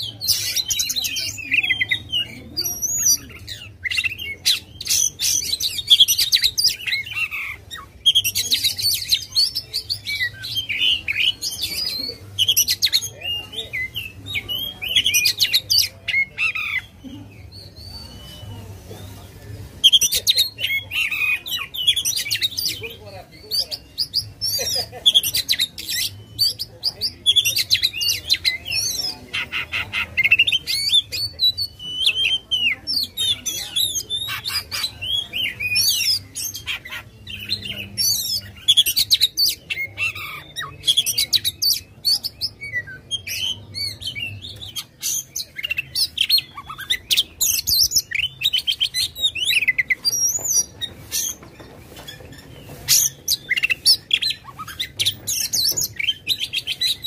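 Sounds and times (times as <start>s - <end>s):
bird singing whistles and trills: 37.2s - 51.4s.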